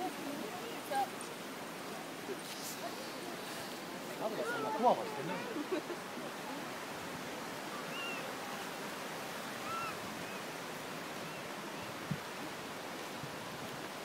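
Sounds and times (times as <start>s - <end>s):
waterfall and stream rushing: 0.0s - 14.0s
short chirping calls: 7.9s - 8.3s.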